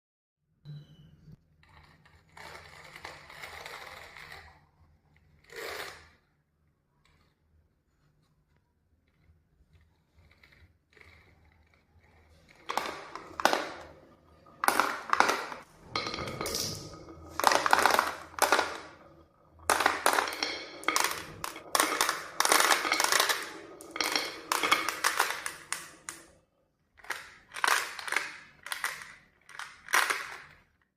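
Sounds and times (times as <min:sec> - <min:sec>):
marbles clattering down wooden track: 0:10.3 - 0:26.4, 0:27.0 - 0:30.8.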